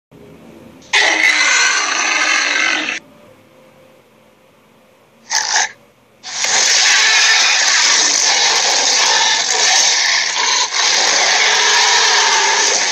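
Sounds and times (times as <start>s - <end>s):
harsh breathy creature vocalizations: 5.3s - 12.9s.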